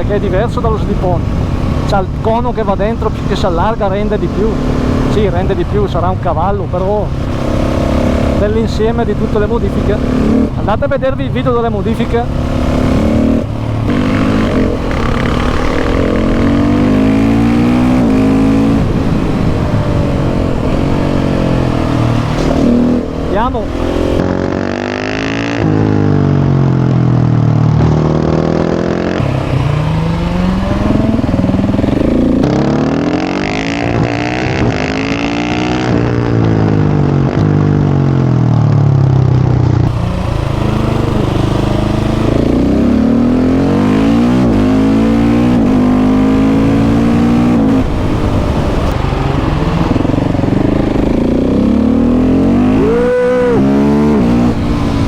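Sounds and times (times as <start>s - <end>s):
motorcycle engine revving: 0.0s - 55.0s
sharp engine rev blip: 21.2s - 25.8s.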